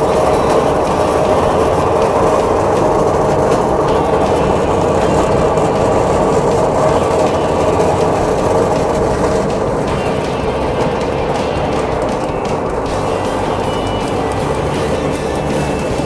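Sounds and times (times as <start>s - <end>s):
grinding machine running: 0.0s - 16.0s.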